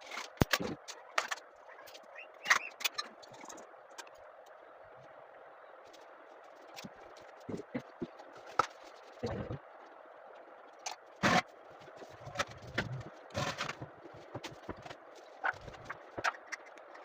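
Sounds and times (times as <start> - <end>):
scraping: 11.2 - 17.0.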